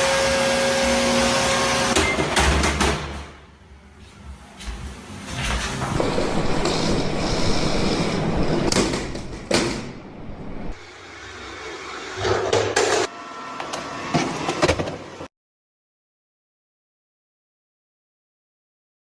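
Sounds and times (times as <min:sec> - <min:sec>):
robot vacuum rumbling and rattling: 0:05.5 - 0:10.8.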